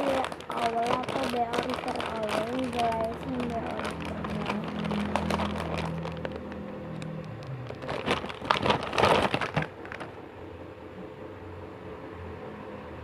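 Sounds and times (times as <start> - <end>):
rustling and crackling handling noise: 0.0 - 10.3.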